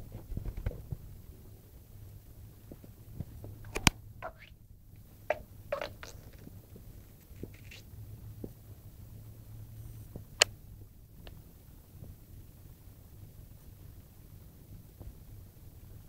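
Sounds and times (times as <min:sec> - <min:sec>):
dog's stomach gurgling: 0:05.3 - 0:06.5.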